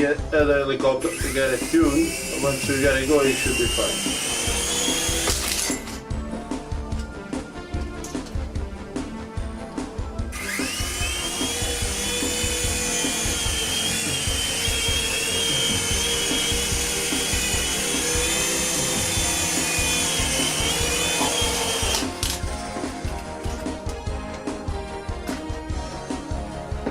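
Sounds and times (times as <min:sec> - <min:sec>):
background music: 0:00.0 - 0:26.9
toy helicopter motor whine: 0:01.1 - 0:05.9, 0:10.3 - 0:22.5.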